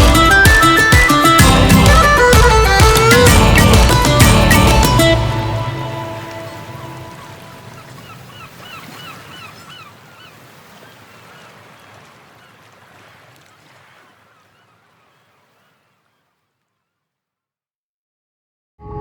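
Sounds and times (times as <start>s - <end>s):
short repeated bird calls: 4.9s - 16.4s.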